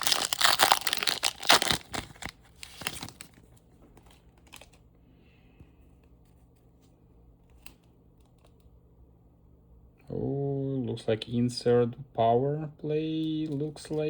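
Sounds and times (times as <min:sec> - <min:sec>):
wrapper tearing and crinkling: 0:00.0 - 0:04.8.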